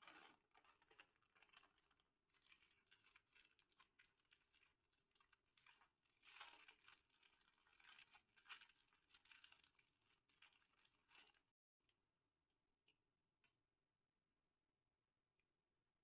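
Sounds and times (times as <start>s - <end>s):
plastic snack packet crinkling: 0.0s - 11.5s.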